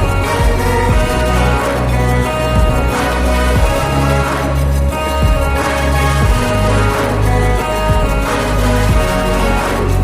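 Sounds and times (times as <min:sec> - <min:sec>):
background music with strong bass: 0:00.0 - 0:10.0.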